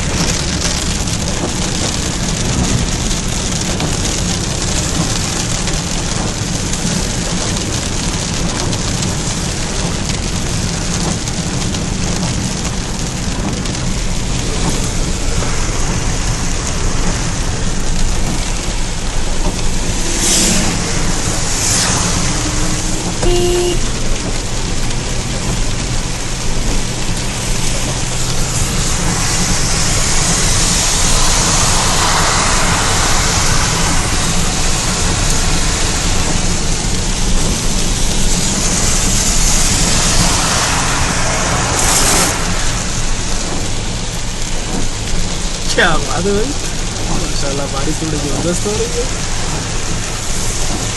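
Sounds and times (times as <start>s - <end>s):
heavy rain: 0.0s - 50.9s
short pitched sound: 19.5s - 24.0s
brief swishes: 19.9s - 23.1s.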